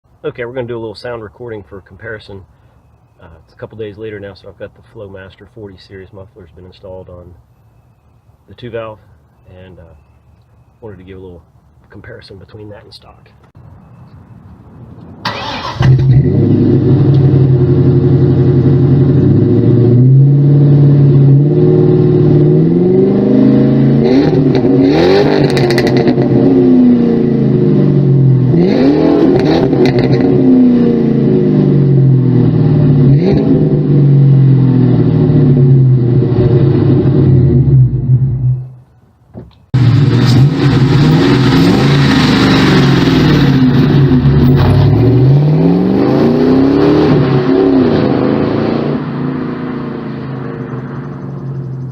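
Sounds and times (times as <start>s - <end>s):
car engine revving while driving: 15.8s - 38.6s, 39.8s - 51.8s.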